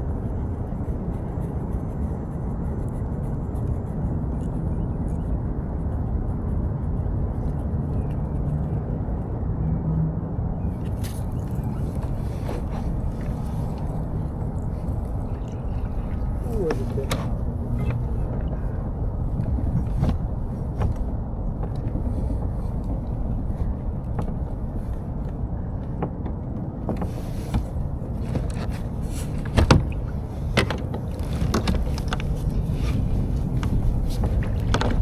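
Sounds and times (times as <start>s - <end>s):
wind rumble on microphone: 0.0s - 35.0s
light clicks and knocks: 23.9s - 35.0s.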